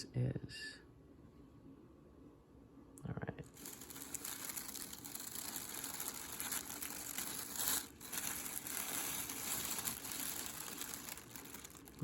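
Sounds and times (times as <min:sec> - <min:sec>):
box packaging crinkling: 0:03.6 - 0:12.0.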